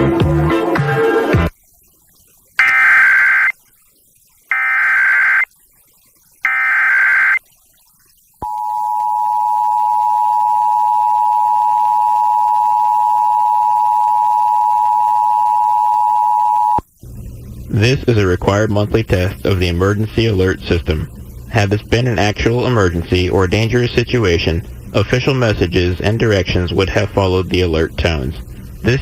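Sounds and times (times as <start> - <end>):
digital data bursts: 2.6 - 3.5, 4.5 - 5.5, 6.4 - 7.4
two-tone attention signal: 2.6 - 3.5, 4.5 - 5.5, 6.5 - 7.4, 8.4 - 16.8.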